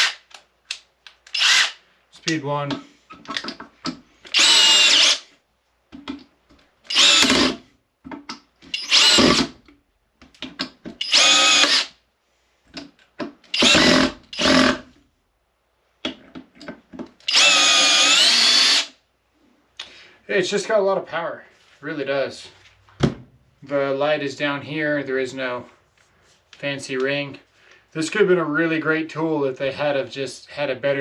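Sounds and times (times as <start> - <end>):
drill driving screws into wood: 0.0 - 0.3, 1.3 - 1.8, 4.3 - 5.2, 6.9 - 7.6, 8.7 - 9.6, 11.0 - 12.0, 13.5 - 14.9, 17.2 - 19.0.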